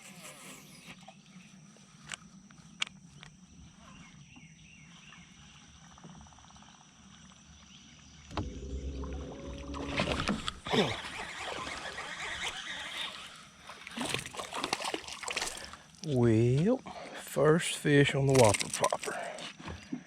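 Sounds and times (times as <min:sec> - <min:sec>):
fish splashing in water: 0:13.7 - 0:15.8.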